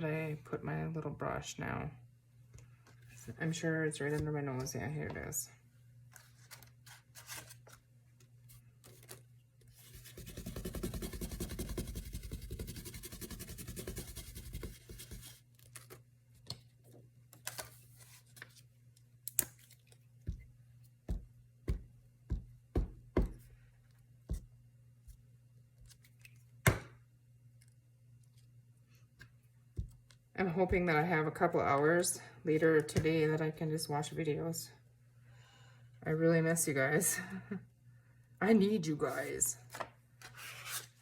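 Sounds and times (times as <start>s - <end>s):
paper rustling: 6.1s - 7.8s, 8.5s - 11.3s, 39.2s - 41.0s
glue brush scrubbing paper: 9.9s - 15.4s.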